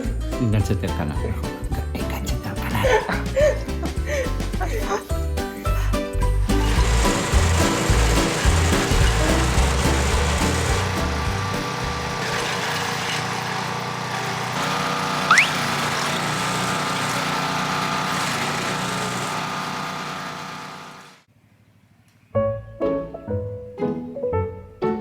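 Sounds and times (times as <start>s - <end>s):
chainsaw engine running: 6.4s - 21.3s
rising whistle: 15.2s - 15.7s.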